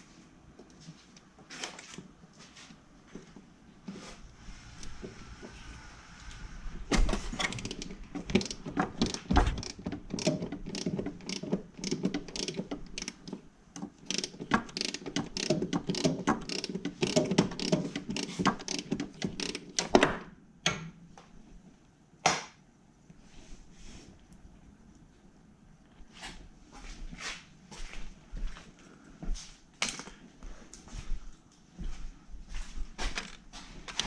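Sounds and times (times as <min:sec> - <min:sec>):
socket ratchet clicking: 0:07.4 - 0:20.0.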